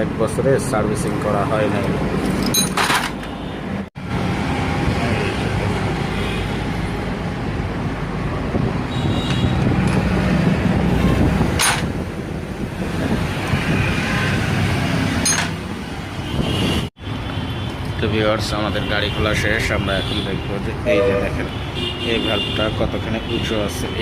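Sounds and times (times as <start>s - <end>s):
road traffic rumble: 0.0s - 24.0s.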